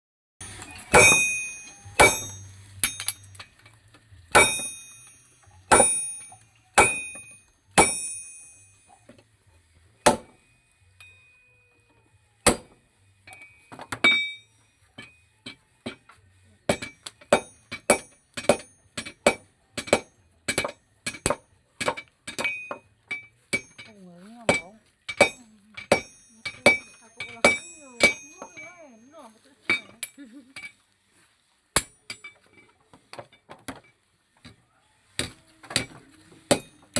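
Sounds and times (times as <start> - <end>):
hammer striking steel anvil: 0.4 - 3.5, 4.3 - 9.0, 10.1 - 10.4, 12.5 - 15.1, 16.7 - 29.1, 29.7 - 30.7, 31.8 - 32.4, 35.2 - 36.9.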